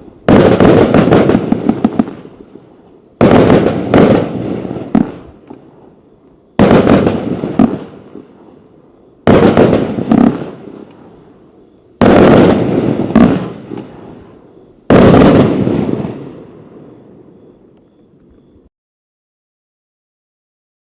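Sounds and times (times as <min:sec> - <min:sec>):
firework crackling: 0:00.0 - 0:05.9, 0:06.6 - 0:08.6, 0:09.2 - 0:17.3
firework bursts: 0:00.0 - 0:17.7
small firework pops: 0:04.9 - 0:05.7, 0:13.2 - 0:14.0.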